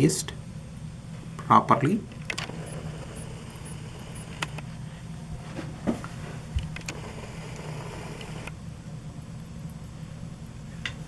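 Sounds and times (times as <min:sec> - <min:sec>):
steady low hum: 0:00.0 - 0:11.0
small clicks and taps of chip socket: 0:02.1 - 0:04.8, 0:06.6 - 0:08.6.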